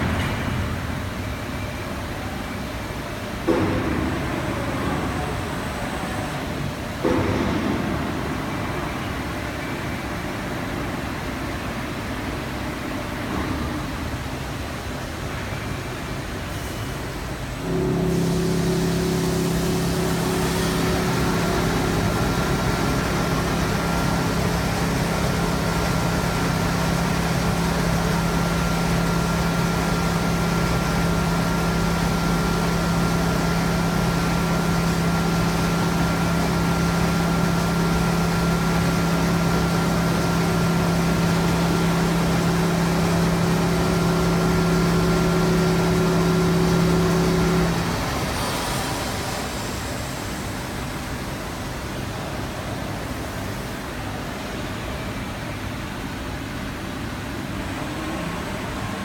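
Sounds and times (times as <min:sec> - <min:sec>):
high-pitched machine whine: 0:17.5 - 0:52.2
grinding machine motor hum: 0:17.6 - 0:49.8.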